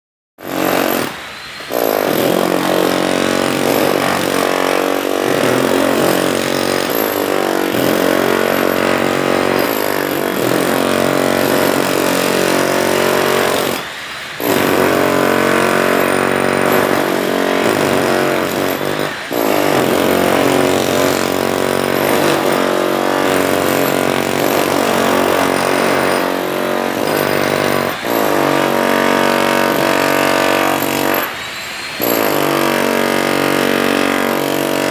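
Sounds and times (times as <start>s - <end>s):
drill motor running: 0.5s - 34.9s.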